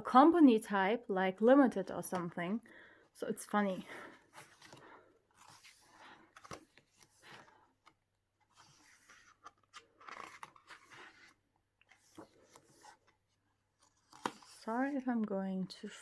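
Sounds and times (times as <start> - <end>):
paper pages turning: 4.3 - 15.3.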